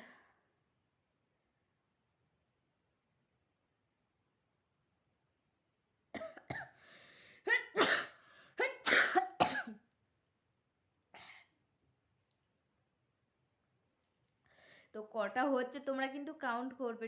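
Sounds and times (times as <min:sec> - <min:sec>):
person gasping: 0:06.8 - 0:07.5, 0:08.2 - 0:08.6
person sneezing: 0:07.5 - 0:09.7.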